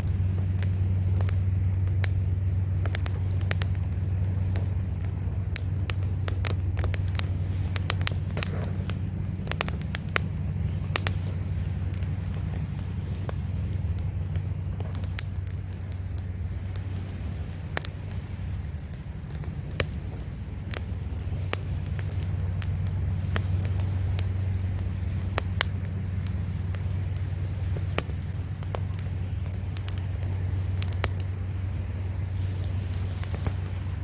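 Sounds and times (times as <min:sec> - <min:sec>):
campfire crackling and popping: 0:00.0 - 0:34.0
sea waves rumbling: 0:00.0 - 0:34.0.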